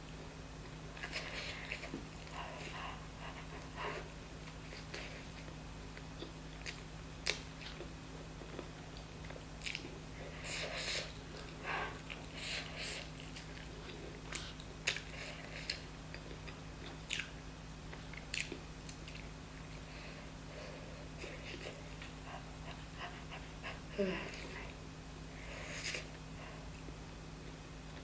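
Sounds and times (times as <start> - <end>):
steady low hum: 0.0 - 28.0
chewing and mouth smacking: 4.4 - 19.4.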